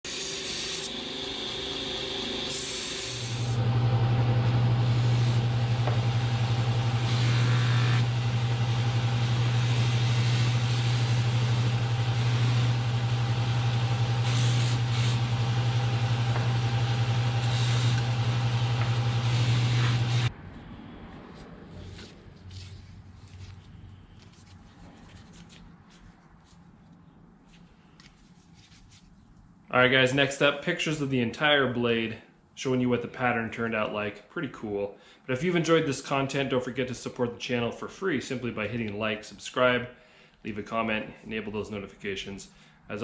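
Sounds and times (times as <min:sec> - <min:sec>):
machine motor humming: 0:00.8 - 0:20.3.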